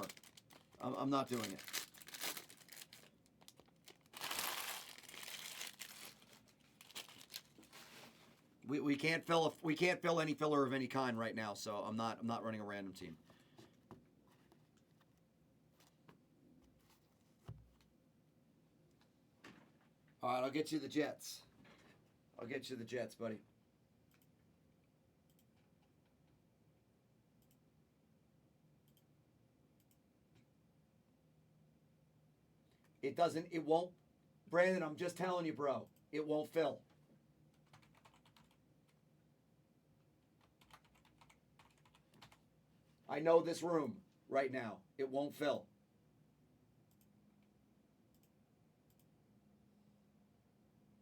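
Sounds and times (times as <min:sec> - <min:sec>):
foil wrappers crinkling: 0:00.0 - 0:08.2.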